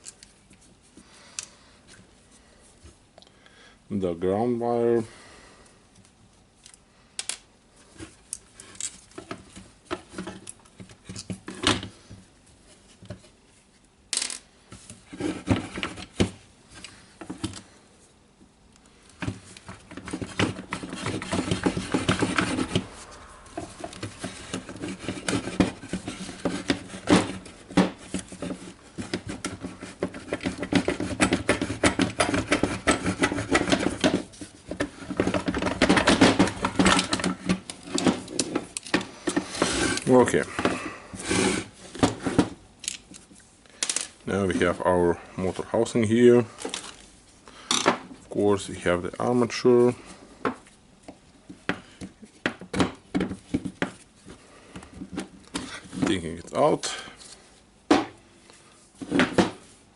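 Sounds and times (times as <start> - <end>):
plastic parts rattling and scraping: 7.3 - 12.1, 14.2 - 17.7, 19.1 - 50.6, 51.5 - 57.4.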